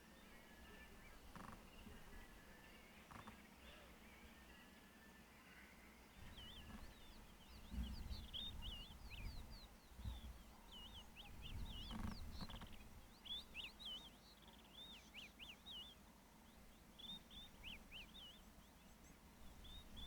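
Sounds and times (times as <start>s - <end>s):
small bird chirping: 0.3s - 2.4s, 3.0s - 3.6s, 6.2s - 16.0s.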